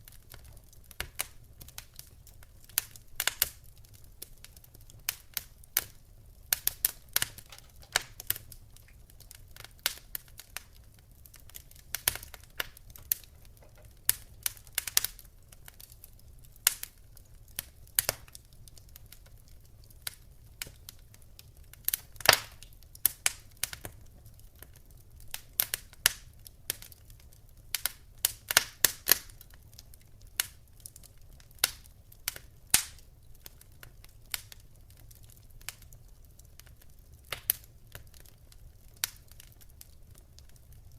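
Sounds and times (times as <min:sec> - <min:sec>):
wood fire crackling: 0:00.0 - 0:40.9.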